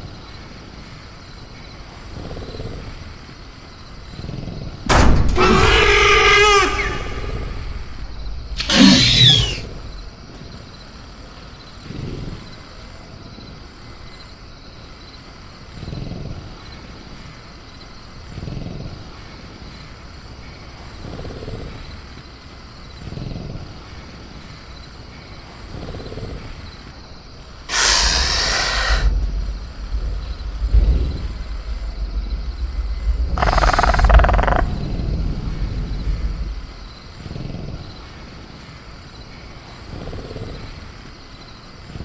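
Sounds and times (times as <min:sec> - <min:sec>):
crickets chirping: 0:00.0 - 0:42.0
creature screeching: 0:05.4 - 0:07.9, 0:08.6 - 0:09.8, 0:27.7 - 0:29.1
low growls: 0:27.7 - 0:38.1.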